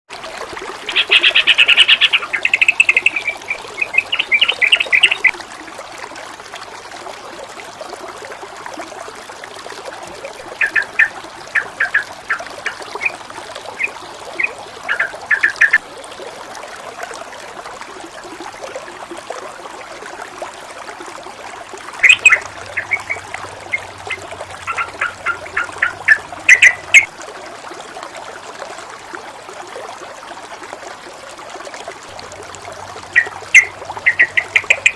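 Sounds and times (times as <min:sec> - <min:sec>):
flowing stream water: 0:00.1 - 0:34.9
small bird chattering calls: 0:00.9 - 0:05.3, 0:10.6 - 0:13.2, 0:13.8 - 0:15.8, 0:22.0 - 0:27.1, 0:33.2 - 0:34.9.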